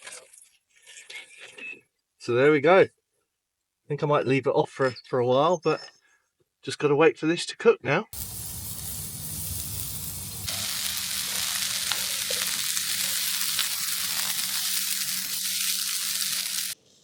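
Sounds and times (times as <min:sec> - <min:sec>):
meat sizzling on a grill: 0:08.2 - 0:16.8.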